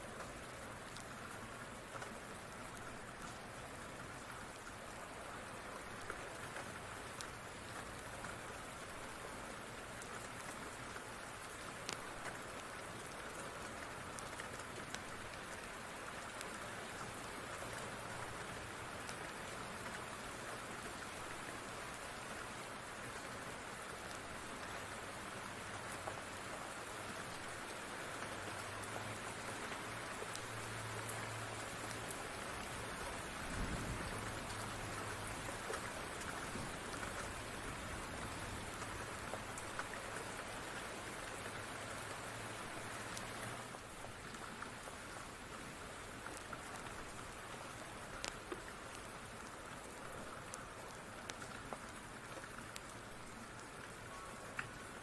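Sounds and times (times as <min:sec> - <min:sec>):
steady rain falling: 0:00.0 - 0:55.0
wood fire crackling: 0:11.8 - 0:13.2.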